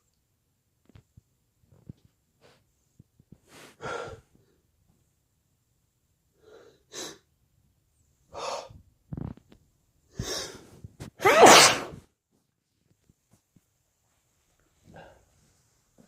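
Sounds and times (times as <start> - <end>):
person gasping breaths: 3.5 - 4.6, 14.8 - 15.4
loud wet sneeze: 11.2 - 12.0.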